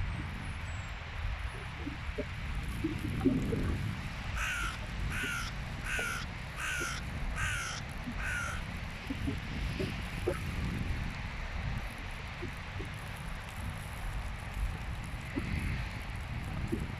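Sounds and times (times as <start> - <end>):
steady low rumble: 0.0 - 16.9
crow cawing: 4.4 - 8.6.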